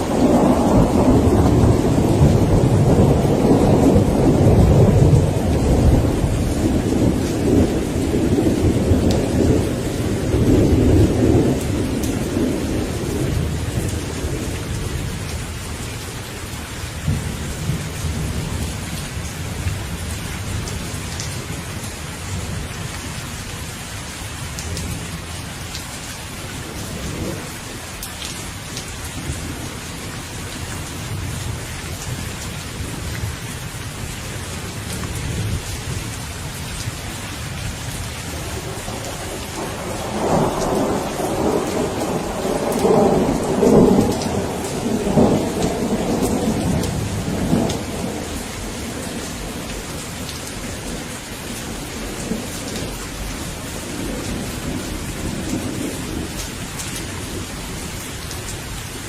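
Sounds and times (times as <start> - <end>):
thunder rolling: 0.0 - 15.0, 38.3 - 51.1
steady rain: 0.0 - 59.0.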